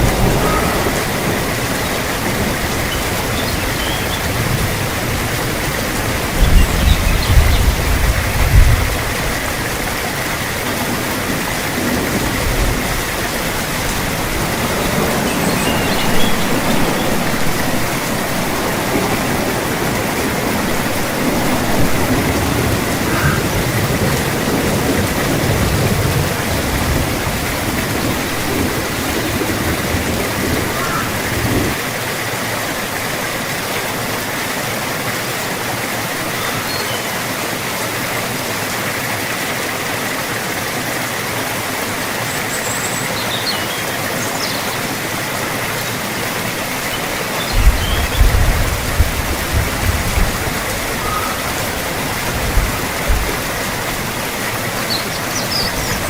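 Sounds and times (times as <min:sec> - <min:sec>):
heavy rain: 0:00.0 - 0:56.0.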